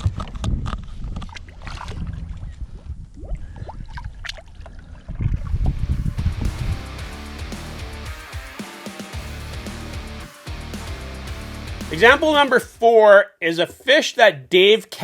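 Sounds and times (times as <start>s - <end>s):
wind rumbling on microphone: 0.0s - 6.8s
water splashing and dripping: 3.2s - 5.9s.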